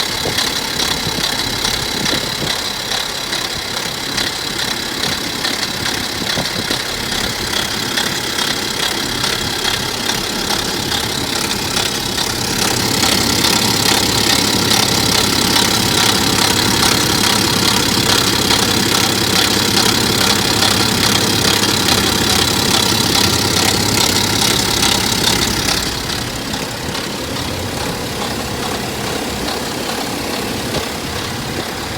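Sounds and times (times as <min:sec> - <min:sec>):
diesel engine idling: 0:00.0 - 0:31.9
rhythmic engine knocking noise: 0:00.0 - 0:31.9.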